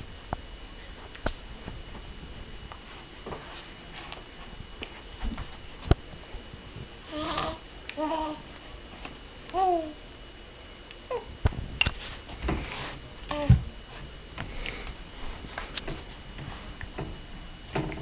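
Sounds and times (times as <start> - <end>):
baby cooing: 7.1 - 8.4.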